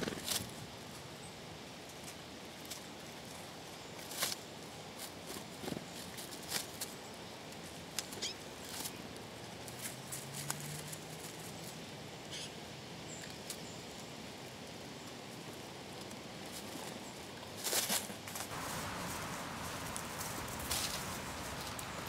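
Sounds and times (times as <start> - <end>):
steady outdoor hiss: 0.0 - 22.0
rodents clicking and scratching: 17.6 - 22.0
faint low hum: 18.5 - 22.0.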